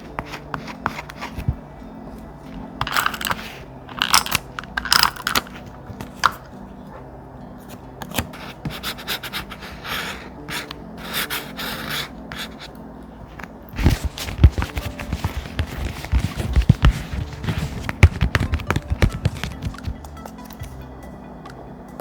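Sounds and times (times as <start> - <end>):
thick paper rubbing and scraping: 13.8 - 20.0.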